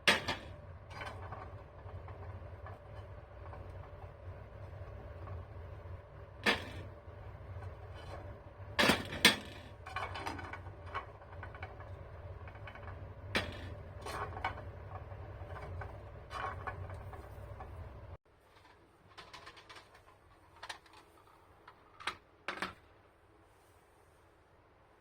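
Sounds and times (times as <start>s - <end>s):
steady low hum: 0.0s - 18.2s
knocks and clicks of hard objects: 8.8s - 18.0s.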